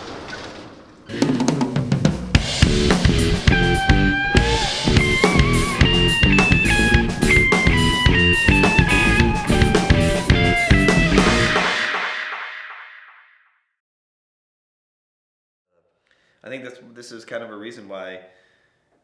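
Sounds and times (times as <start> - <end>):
live rock band playing: 1.2 - 12.0
held melody line: 2.4 - 11.8.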